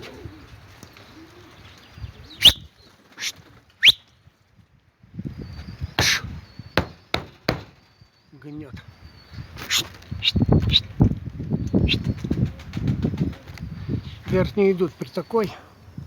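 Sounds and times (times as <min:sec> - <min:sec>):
wind buffeting microphone: 0:01.5 - 0:02.8, 0:04.6 - 0:07.0, 0:08.6 - 0:14.9
bird chirps: 0:01.6 - 0:04.1.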